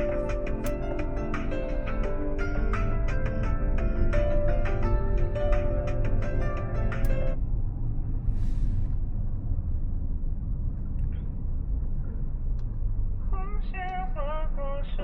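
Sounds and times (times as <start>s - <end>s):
music with singing: 0.0s - 7.4s
road and tyre rumble: 0.0s - 15.0s.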